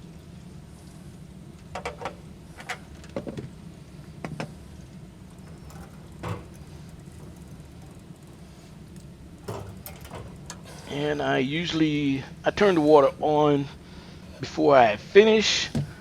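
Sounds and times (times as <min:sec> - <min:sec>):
steady low hum: 0:00.0 - 0:16.0
tools and metal parts clicking: 0:05.4 - 0:11.0.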